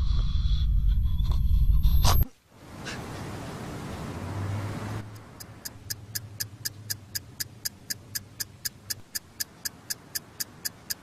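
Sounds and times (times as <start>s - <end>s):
clock ticking quickly: 5.1s - 11.0s.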